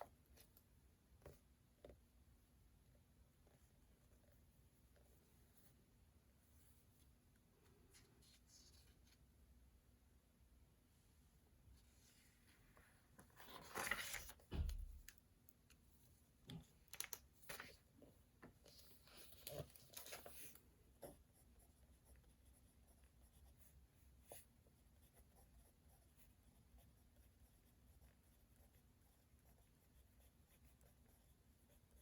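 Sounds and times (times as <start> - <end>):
paper rustling: 12.0 - 15.2, 16.9 - 20.6.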